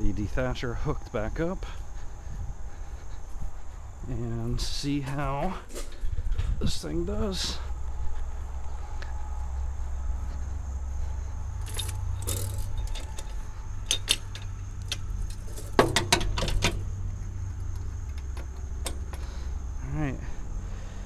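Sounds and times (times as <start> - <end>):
steady low rumble: 0.0 - 21.0
metal clinking and jangling: 11.5 - 16.9.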